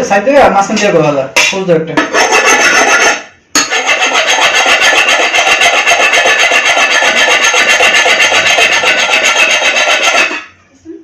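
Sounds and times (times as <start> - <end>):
blade rasping against fish: 2.2 - 10.5.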